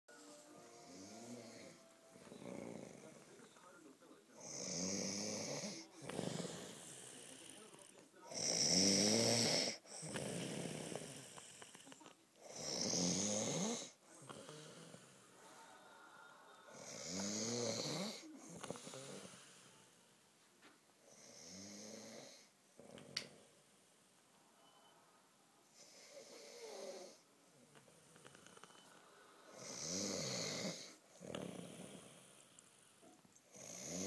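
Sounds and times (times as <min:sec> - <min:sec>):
person snoring: 0:00.2 - 0:03.4, 0:04.4 - 0:19.9, 0:21.0 - 0:23.5, 0:25.8 - 0:27.2, 0:27.8 - 0:32.9, 0:33.5 - 0:34.0
soft breath: 0:25.7 - 0:30.1.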